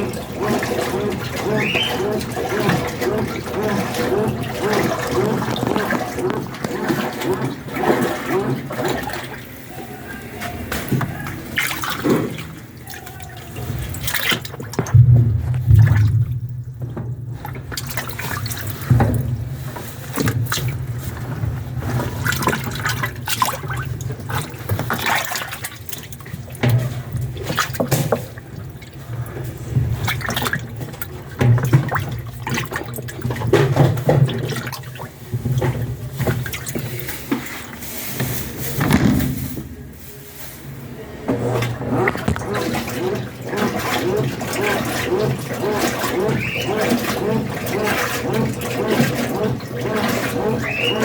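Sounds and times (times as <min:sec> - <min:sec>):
washing machine hum: 0:00.0 - 0:51.0
water sloshing in washing machine: 0:00.0 - 0:51.0.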